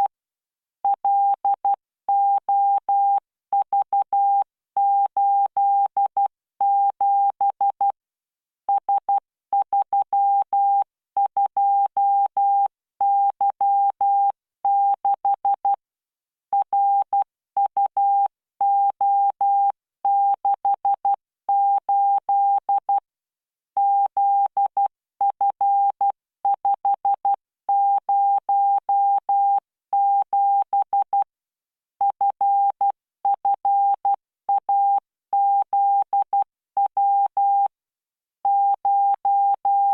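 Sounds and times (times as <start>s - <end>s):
morse code beeps: 38.5s - 39.9s.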